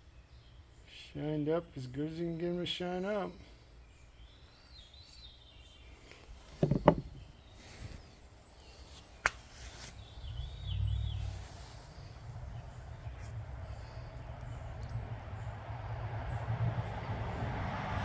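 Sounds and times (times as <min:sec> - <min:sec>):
birds chirping: 0:00.0 - 0:17.6
loud knocks: 0:06.5 - 0:07.3
low rumble: 0:10.0 - 0:17.9.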